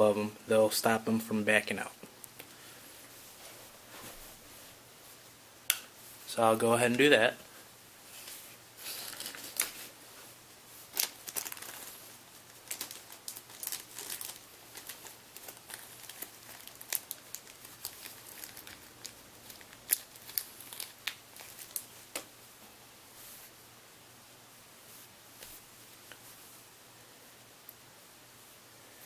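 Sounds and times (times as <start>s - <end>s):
plastic bag crinkling: 8.8s - 10.0s, 10.8s - 22.2s.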